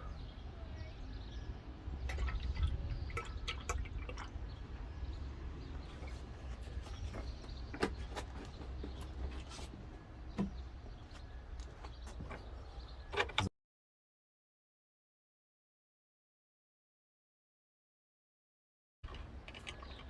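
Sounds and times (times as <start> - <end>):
fluid being poured: 2.0 - 4.9.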